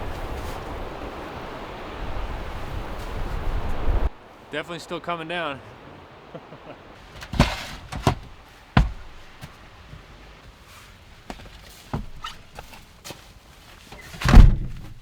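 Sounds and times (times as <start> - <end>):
faint steady rustle: 0.0 - 15.0
objects knocking and thumping: 7.0 - 10.1.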